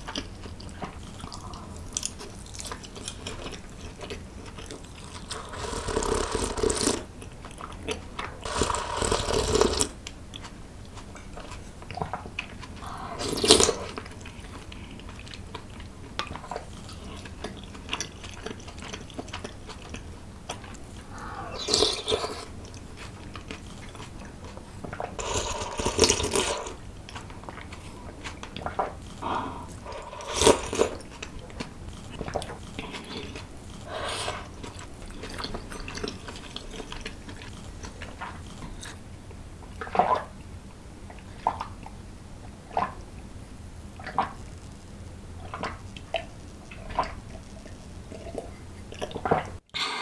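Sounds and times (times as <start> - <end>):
person chewing and biting food: 0.0 - 15.9, 16.5 - 39.0.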